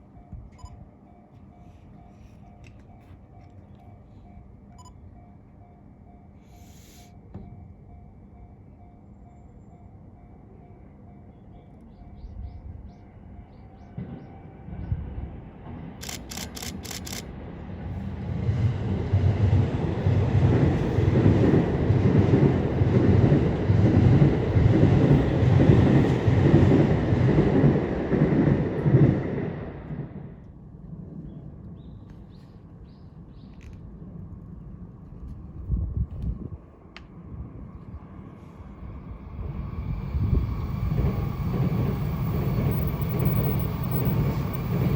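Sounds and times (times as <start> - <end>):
train wheels clattering on rails: 40.2 - 44.9.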